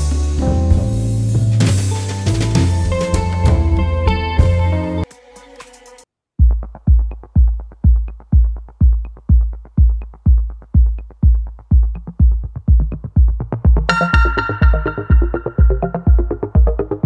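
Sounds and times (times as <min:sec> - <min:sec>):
heavy kick drum beat: 0:06.4 - 0:17.0
synth chord: 0:13.9 - 0:16.8.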